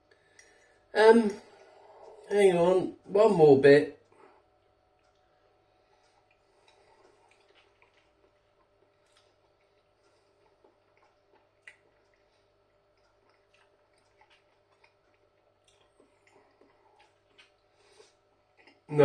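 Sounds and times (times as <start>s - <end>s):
small clicks of eating: 4.0s - 18.9s.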